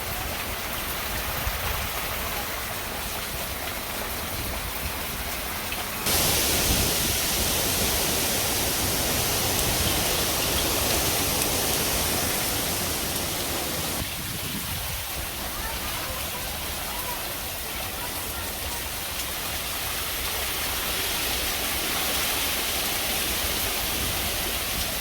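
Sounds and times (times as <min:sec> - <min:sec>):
heavy rain hissing: 0:05.6 - 0:25.0.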